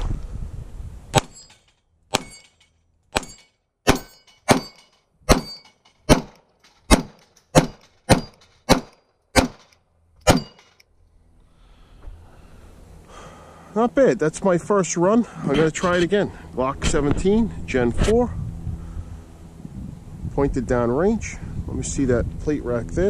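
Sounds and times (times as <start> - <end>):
struck steel plate ringing: 1.2 - 6.3, 6.9 - 8.8, 10.2 - 10.8
pistol shots: 2.1 - 2.4, 3.2 - 10.6.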